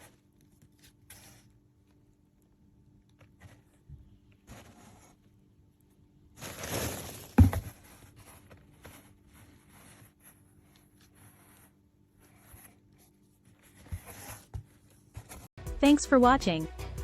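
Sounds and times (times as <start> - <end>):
packaging rustling and tearing: 6.4 - 7.6.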